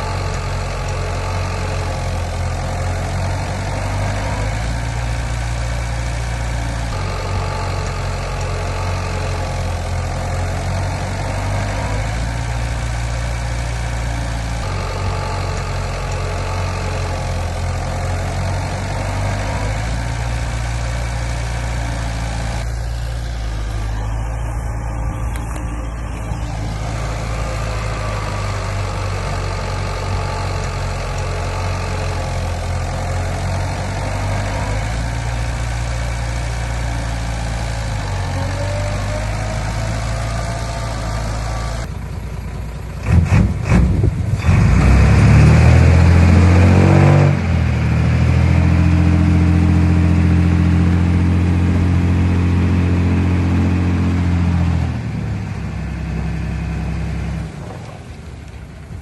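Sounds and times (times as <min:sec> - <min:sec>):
heavy machinery diesel engine: 0:00.0 - 0:59.0.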